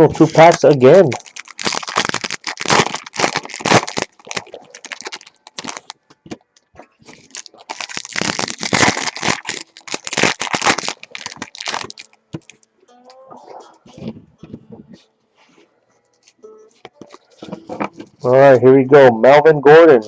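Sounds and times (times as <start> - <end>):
foil wrappers crinkling: 0.0 - 12.7.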